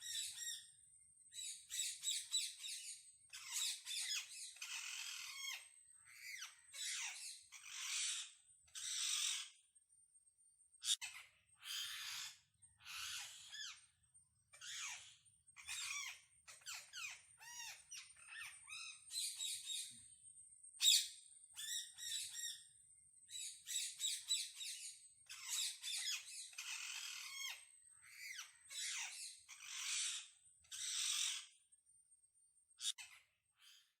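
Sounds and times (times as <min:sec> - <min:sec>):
parrot squawking and chirping: 0:01.7 - 0:05.6, 0:06.2 - 0:09.5, 0:10.9 - 0:13.8, 0:14.6 - 0:19.8, 0:23.6 - 0:31.5.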